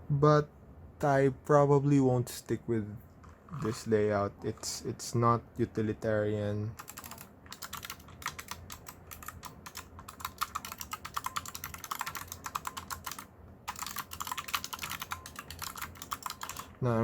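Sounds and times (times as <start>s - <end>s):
mechanical keyboard typing: 6.8s - 16.8s.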